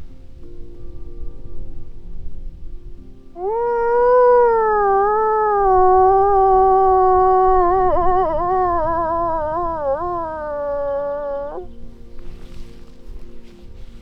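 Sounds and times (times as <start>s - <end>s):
moose call nasal moan: 3.3s - 12.7s.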